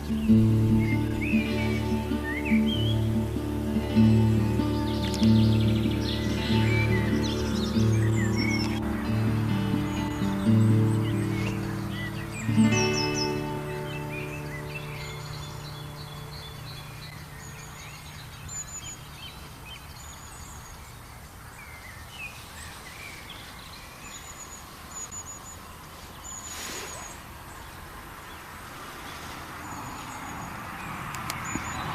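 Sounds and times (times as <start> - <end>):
lower bird twittering: 0.0 - 31.9
outdoor background hiss: 0.0 - 31.9
small birds chirping: 0.0 - 31.9.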